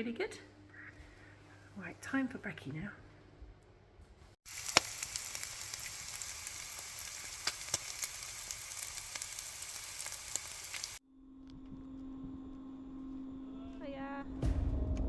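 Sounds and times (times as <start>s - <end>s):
food sizzling in a frying pan: 4.4s - 11.0s.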